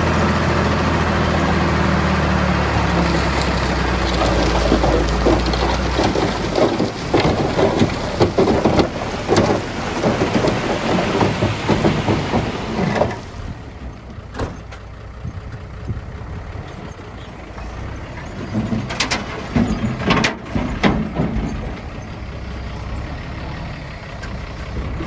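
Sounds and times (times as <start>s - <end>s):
heavy machinery engine: 0.0s - 25.0s
rock crunching and clattering: 2.8s - 14.0s.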